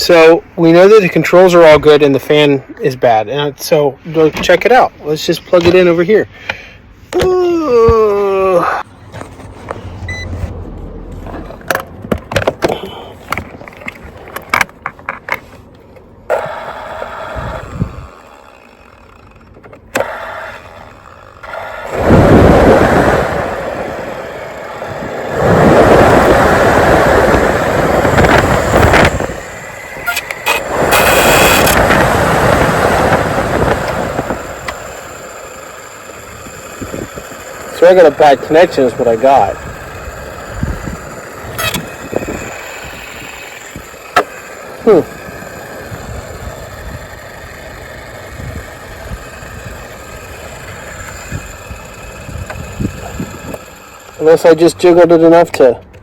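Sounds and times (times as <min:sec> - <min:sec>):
blower motor rushing air: 0:16.2 - 0:55.5.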